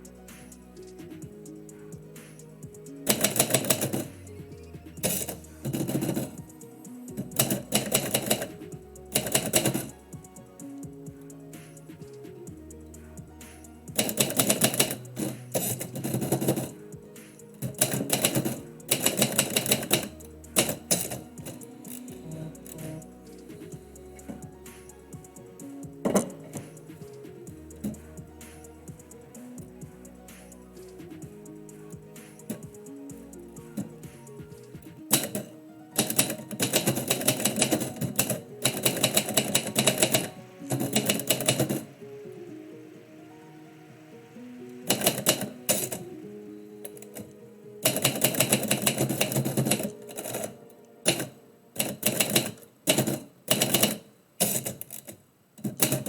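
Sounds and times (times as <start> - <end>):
faint background music: 0.0 - 56.0
typewriter keys striking: 3.1 - 4.1, 5.0 - 6.5, 7.1 - 10.0, 13.9 - 16.8, 17.5 - 24.4, 33.7 - 41.9, 44.9 - 46.0, 46.9 - 56.0.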